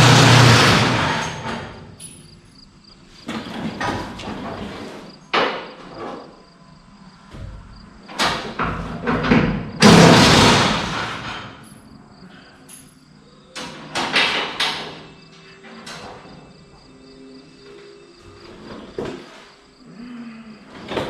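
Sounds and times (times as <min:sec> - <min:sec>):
metal knocks and clanks: 0:07.3 - 0:11.8.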